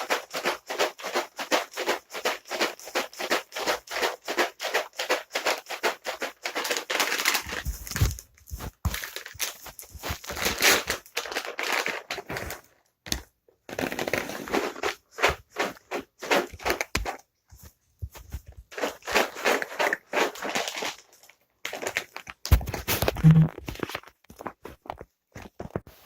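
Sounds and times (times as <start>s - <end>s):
cat treats rattling in container: 0.0s - 8.3s, 8.9s - 12.7s, 13.8s - 17.2s, 18.7s - 24.5s.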